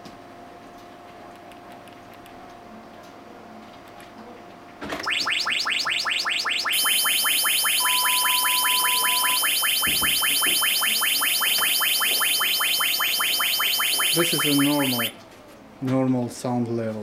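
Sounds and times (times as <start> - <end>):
rapid repeating chirps: 5.0 - 15.1
steady high tone: 5.0 - 15.1
lower tone: 5.1 - 15.1.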